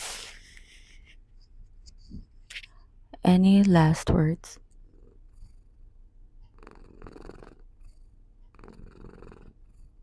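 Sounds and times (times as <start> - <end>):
cat purring: 4.8 - 10.0.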